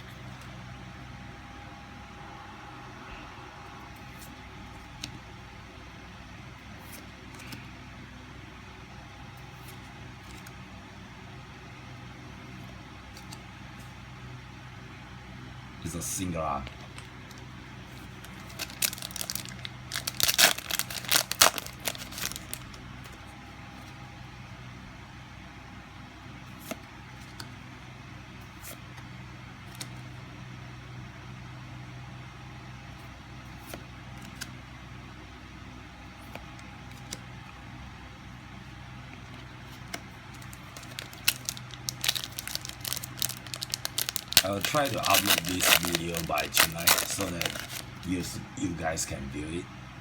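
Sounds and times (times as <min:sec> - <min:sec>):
low steady hum: 0:00.0 - 0:50.0
handling of cards: 0:09.4 - 0:10.6, 0:12.6 - 0:14.0, 0:16.1 - 0:24.0, 0:28.4 - 0:30.1, 0:33.0 - 0:34.6, 0:36.2 - 0:37.4, 0:39.0 - 0:48.4
foil pack tearing and crinkling: 0:18.1 - 0:22.8, 0:40.3 - 0:48.0.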